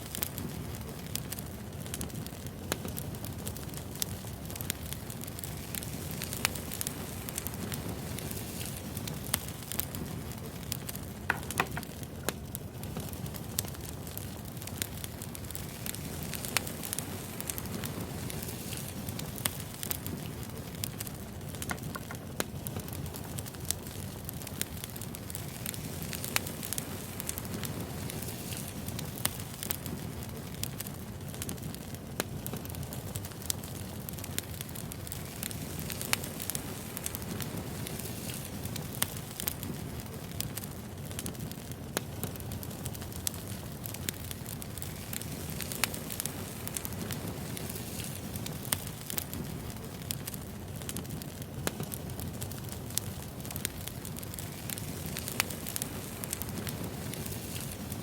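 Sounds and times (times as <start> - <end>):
firewood crackling: 0.0 - 58.0
low rush of flame: 0.0 - 58.0
sharp pops and snaps: 10.8 - 12.4, 21.6 - 23.3.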